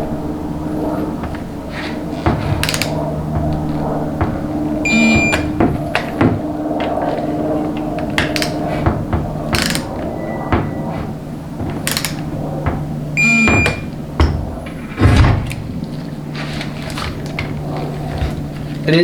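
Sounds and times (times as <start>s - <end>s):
steady background hum: 0.0s - 19.0s
hand tools clicking on metal: 1.8s - 3.8s, 6.8s - 8.8s, 9.4s - 10.2s, 11.6s - 12.4s.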